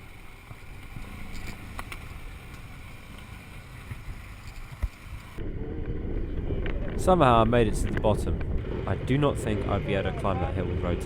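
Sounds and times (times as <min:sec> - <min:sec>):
motorcycle low rumble: 0:00.0 - 0:11.0
steady engine hum: 0:00.0 - 0:11.0
wind buffeting microphone: 0:03.6 - 0:11.0.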